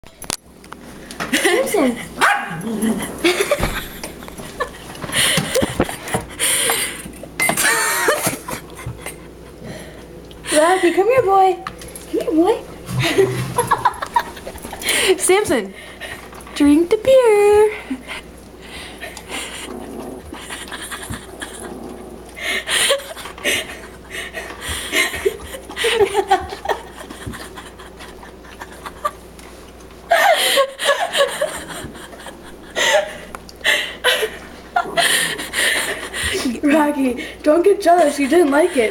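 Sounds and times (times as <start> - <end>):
person laughing and snickering: 2.9 - 9.4, 12.9 - 15.1, 17.8 - 29.3, 30.1 - 36.6.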